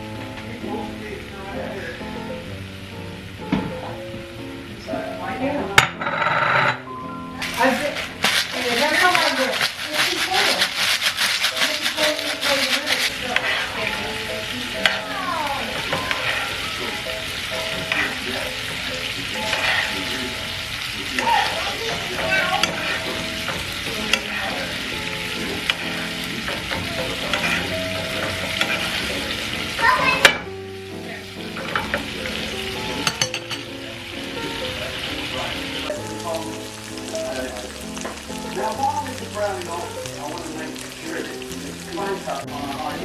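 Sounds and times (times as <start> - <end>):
food sizzling in a pan: 0.0 - 6.5, 7.3 - 43.0
scraping and clicking from stirring: 8.2 - 13.8, 26.5 - 27.7.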